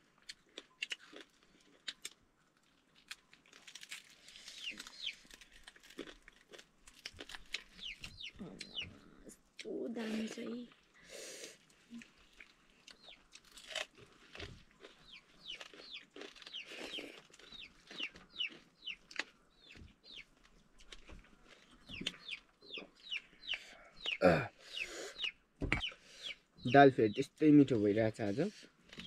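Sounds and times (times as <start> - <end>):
chickens peeping: 4.6 - 5.3, 7.7 - 9.2, 15.0 - 20.4, 21.7 - 27.3.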